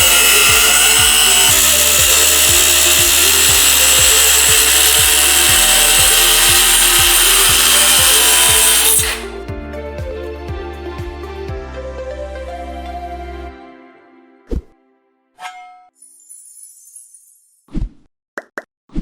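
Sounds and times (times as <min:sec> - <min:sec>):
power cutter whining: 0:00.0 - 0:09.4
background music with soft beat: 0:09.3 - 0:13.9.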